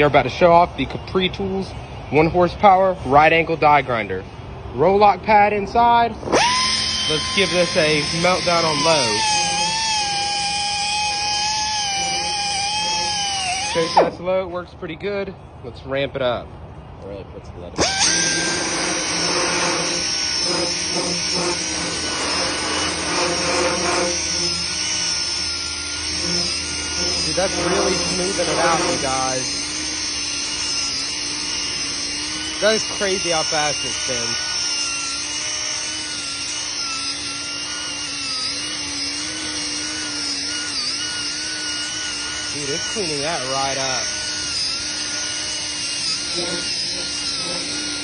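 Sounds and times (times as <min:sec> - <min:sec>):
pneumatic die grinder whining: 0:05.8 - 0:14.4, 0:17.8 - 0:48.0
disc grinding a workpiece: 0:06.2 - 0:14.2, 0:17.8 - 0:48.0.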